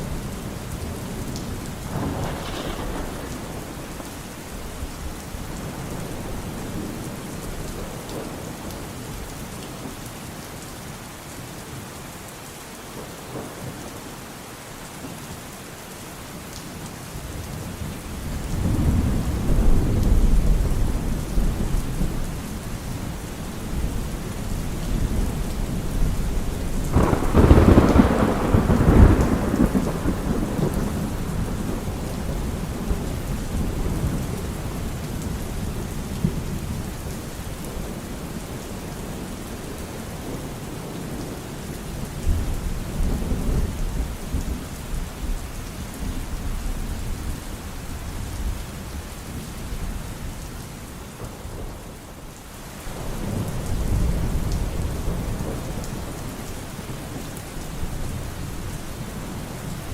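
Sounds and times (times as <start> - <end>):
steady rain: 0.0 - 59.9
thunder clap and rumble: 0.8 - 8.8, 23.6 - 38.5.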